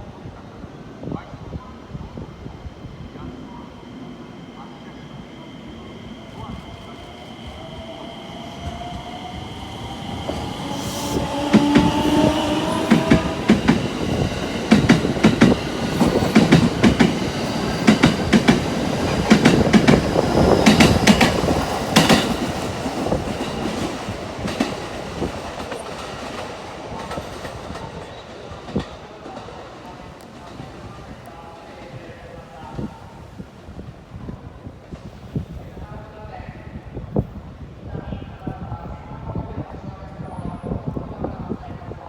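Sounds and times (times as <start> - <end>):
electric train whine: 2.2 - 26.4
train wheels clattering on rail joints: 11.2 - 29.5.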